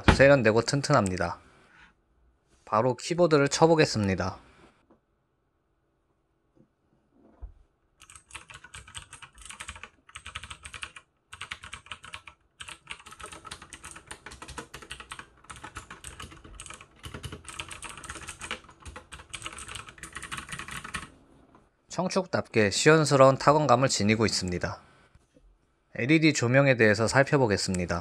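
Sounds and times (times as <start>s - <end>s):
fast typing on clicky keyboard: 8.0s - 21.1s.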